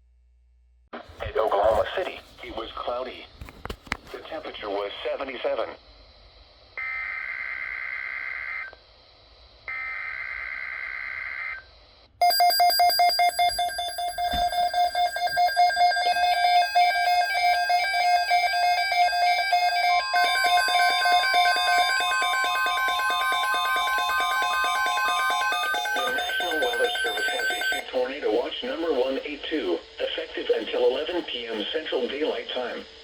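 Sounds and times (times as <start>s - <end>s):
electronic alarm beeps: 12.2s - 27.9s
steady high tone: 12.2s - 28.4s
buzzy data tone bursts: 13.1s - 32.8s.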